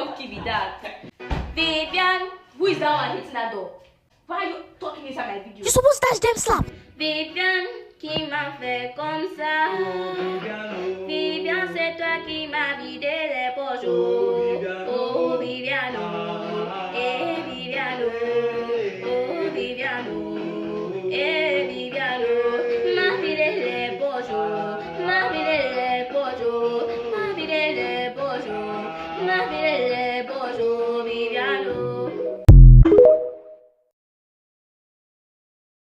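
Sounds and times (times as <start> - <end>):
musical accompaniment: 32.0 - 33.7.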